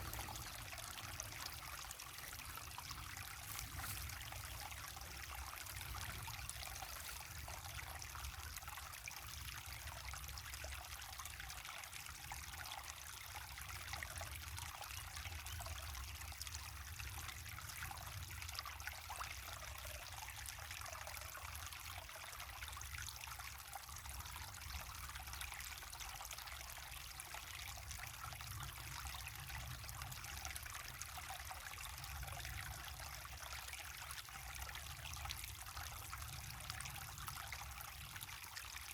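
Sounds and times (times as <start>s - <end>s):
waterfall and river running: 0.0s - 7.2s.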